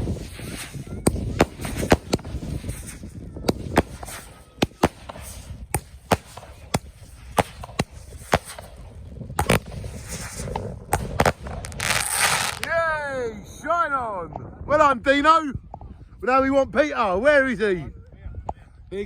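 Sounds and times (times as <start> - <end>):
fireworks bangs and cracks: 0.0 - 12.8.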